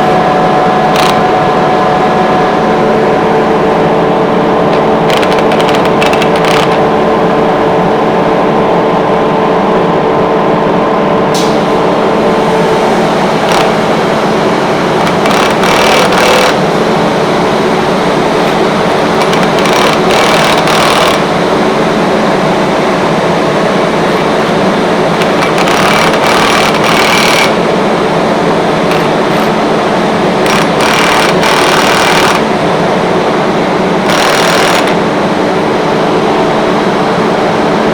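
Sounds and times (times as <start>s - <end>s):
air compressor humming: 0.0s - 37.9s.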